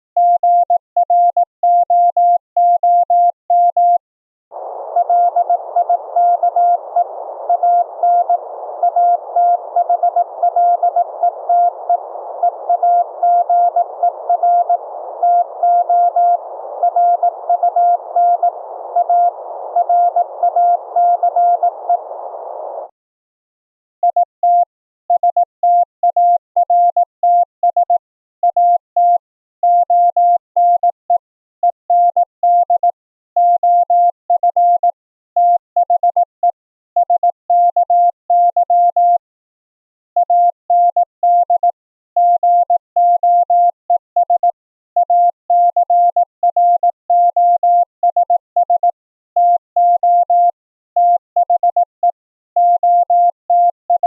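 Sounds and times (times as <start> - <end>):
morse code tone: 4.6 - 22.9.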